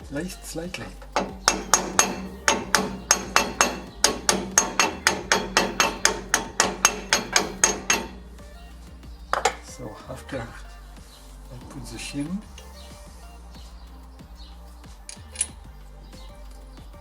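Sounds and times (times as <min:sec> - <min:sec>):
hammer tapping metal: 0:01.1 - 0:08.7.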